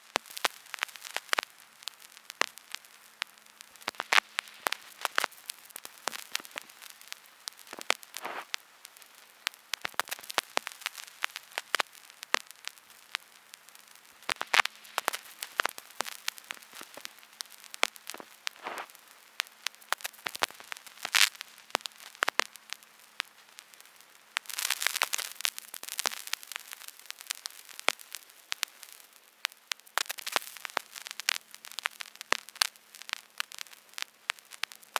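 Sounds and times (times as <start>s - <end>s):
vinyl surface hiss: 0.0s - 29.2s
vinyl clicks and pops: 3.8s - 8.6s, 14.3s - 22.5s.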